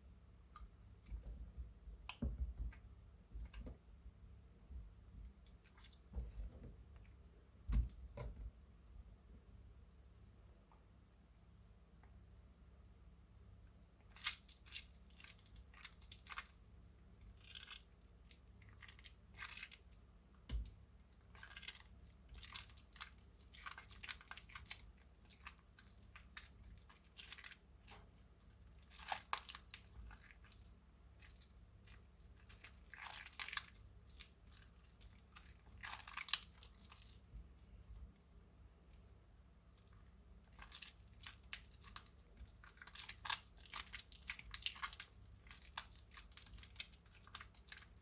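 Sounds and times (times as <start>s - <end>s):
wet soap crackling and scraping: 5.2s - 8.4s, 14.0s - 48.0s.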